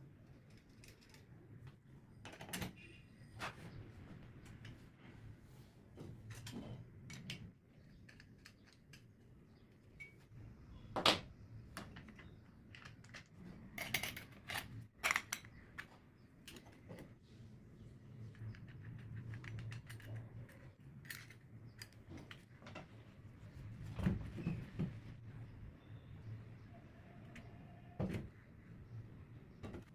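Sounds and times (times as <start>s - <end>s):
small hard parts clicking: 0.3s - 1.5s, 18.3s - 22.5s.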